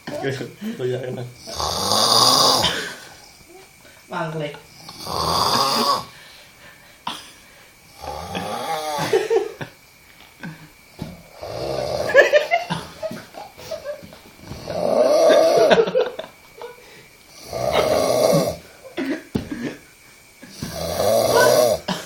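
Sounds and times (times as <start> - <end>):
person snoring loudly: 1.4 - 3.3, 4.7 - 6.2, 7.9 - 9.4, 11.2 - 12.5, 14.6 - 15.9, 17.3 - 18.7, 20.4 - 22.0
quiet breaths: 2.6 - 5.1, 5.8 - 8.7, 16.4 - 21.9.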